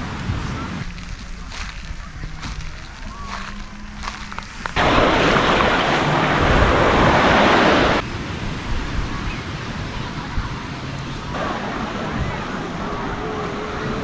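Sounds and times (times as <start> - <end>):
wind noise on microphone: 0.0 - 14.0
loud rush of noise: 4.8 - 14.0
surf washing on beach: 4.8 - 14.0.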